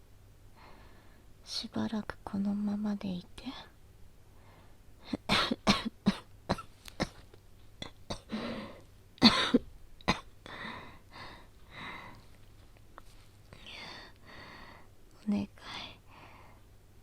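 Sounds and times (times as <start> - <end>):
woman breathing: 0.5 - 1.4, 4.3 - 4.9, 8.3 - 8.9, 10.4 - 12.4, 13.5 - 15.0, 15.9 - 16.7
woman coughing: 5.0 - 7.2, 7.8 - 8.4, 9.2 - 10.3.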